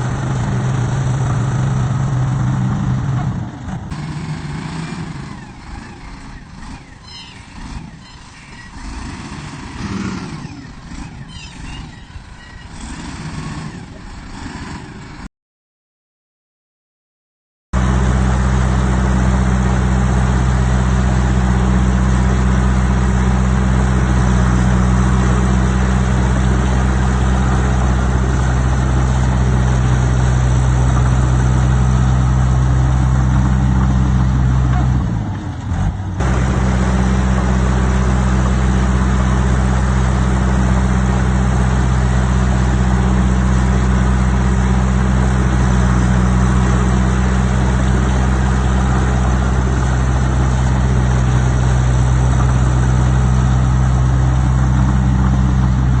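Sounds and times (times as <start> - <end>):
diesel engine humming: 0.0 - 15.3, 17.8 - 56.0.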